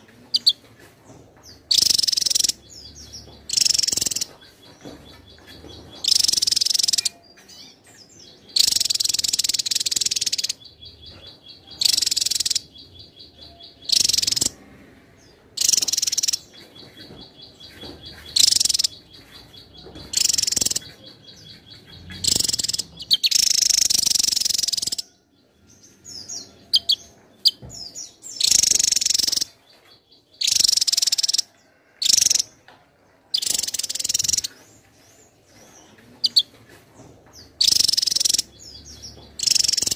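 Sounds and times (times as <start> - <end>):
bird singing rapid high song: 0.0 - 0.7, 1.4 - 32.6, 33.3 - 39.9
faint fast bird trill: 1.7 - 2.6, 11.7 - 12.7.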